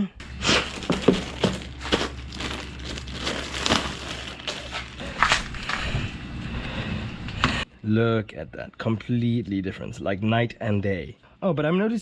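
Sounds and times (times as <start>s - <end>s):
wrapping crinkling and rustling: 0.3s - 6.0s.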